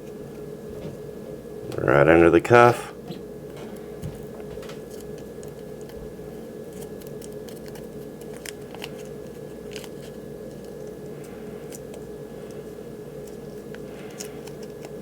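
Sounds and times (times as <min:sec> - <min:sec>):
background hum: 0:00.0 - 0:15.0
tape crackling: 0:03.5 - 0:15.0.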